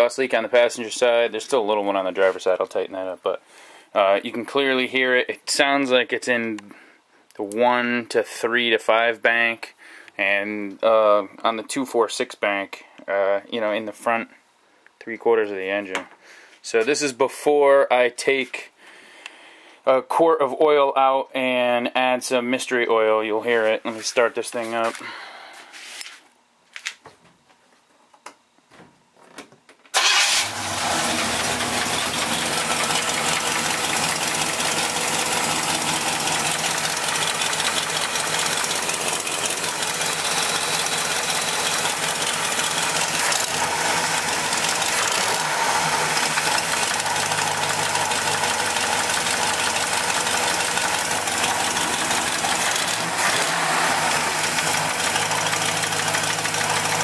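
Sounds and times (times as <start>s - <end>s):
engine starting and idling: 29.9s - 57.0s
engine knocking: 31.1s - 57.0s.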